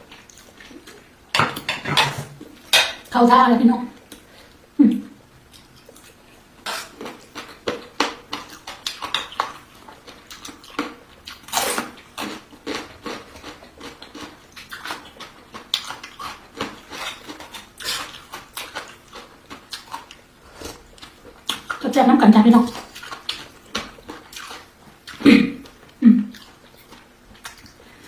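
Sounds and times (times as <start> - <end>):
cutlery clinking against dishes: 1.4 - 3.0
chewing and mouth sounds: 5.5 - 21.8, 22.7 - 28.0.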